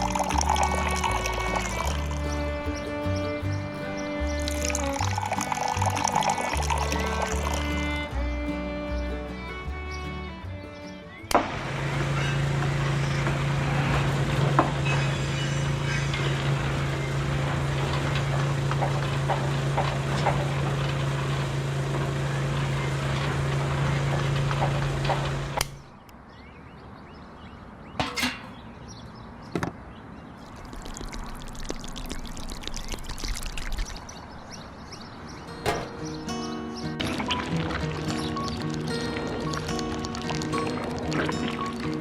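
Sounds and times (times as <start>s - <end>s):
sharp knocks: 35.6s - 36.3s.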